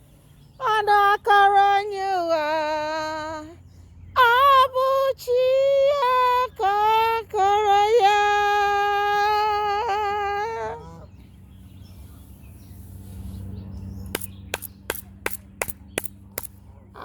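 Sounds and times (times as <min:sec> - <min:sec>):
woman singing long note: 0:04.2 - 0:10.9
sharp clicks: 0:14.0 - 0:16.6.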